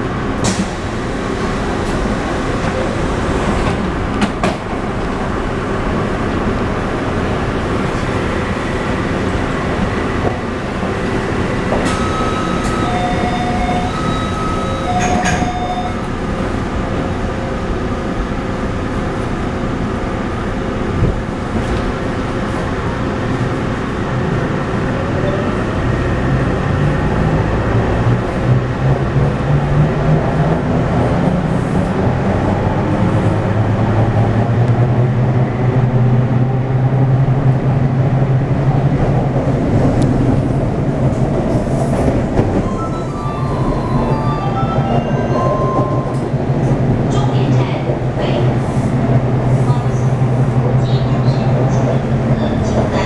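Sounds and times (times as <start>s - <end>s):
train rumbling on rails: 0.0s - 53.0s
short stepped high tones: 42.6s - 46.6s.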